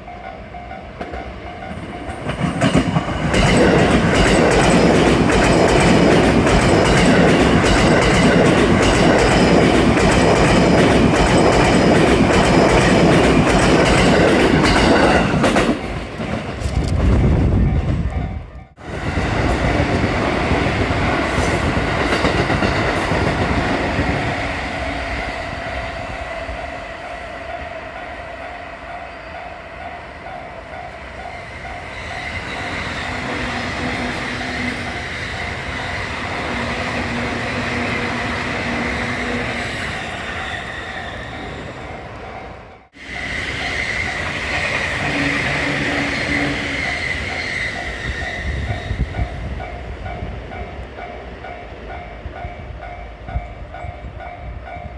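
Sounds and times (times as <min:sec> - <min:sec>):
crossing warning bell ringing: 0:00.0 - 0:16.3, 0:40.2 - 0:54.9
train wheels squealing on rails: 0:20.8 - 0:50.3.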